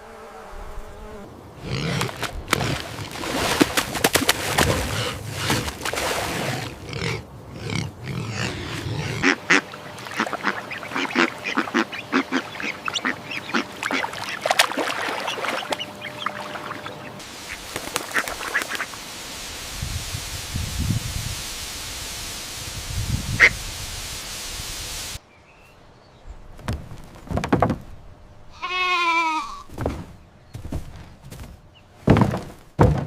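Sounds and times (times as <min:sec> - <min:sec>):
ducks quacking: 0:06.8 - 0:19.0, 0:23.3 - 0:23.6.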